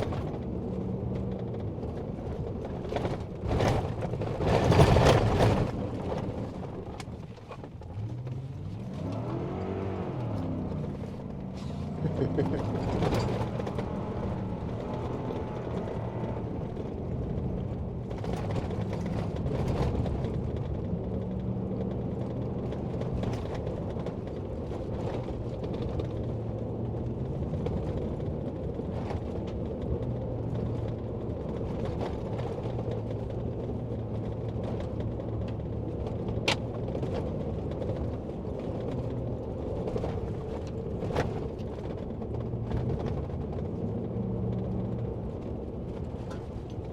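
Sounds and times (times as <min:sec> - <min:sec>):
vehicle engine driving: 0:00.0 - 0:46.9
vehicle rattles and creaks: 0:00.0 - 0:46.9.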